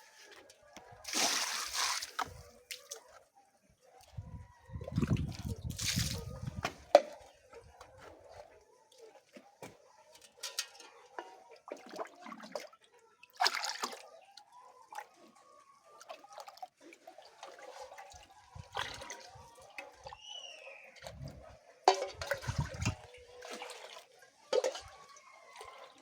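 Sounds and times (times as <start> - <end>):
liquid splashing and dripping: 1.0 - 3.0.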